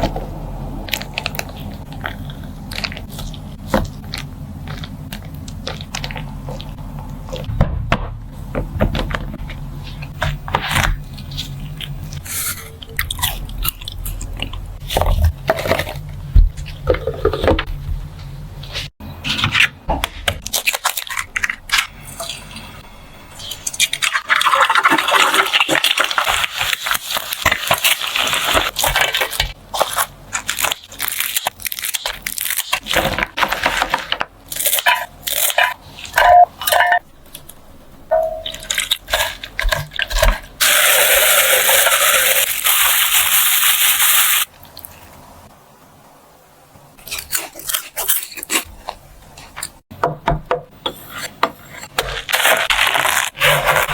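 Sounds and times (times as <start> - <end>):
utensils and dishes clinking: 32.9 - 37.0, 38.1 - 43.3.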